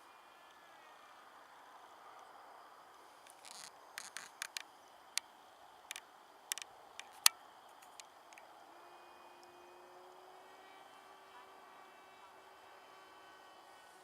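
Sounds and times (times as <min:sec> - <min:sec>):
sharp clicks and taps: 0:04.0 - 0:04.7, 0:06.5 - 0:08.1.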